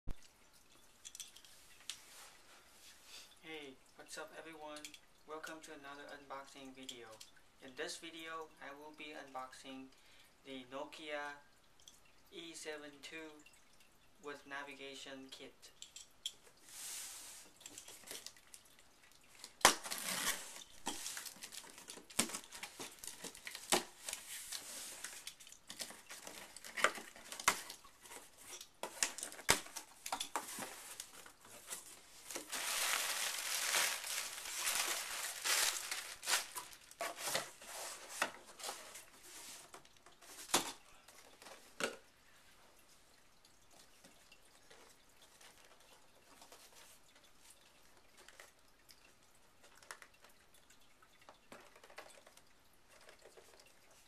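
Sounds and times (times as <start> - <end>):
plastic and paper crinkling: 19.3 - 41.8.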